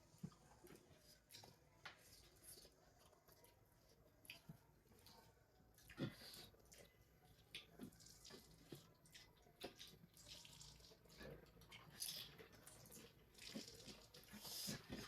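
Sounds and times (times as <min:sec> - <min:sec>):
wet eating noises: 0:00.1 - 0:15.0.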